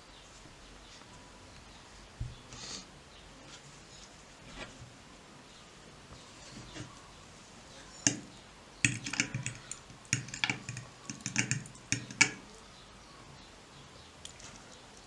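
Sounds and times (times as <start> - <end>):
computer keyboard typing: 8.9 - 12.4.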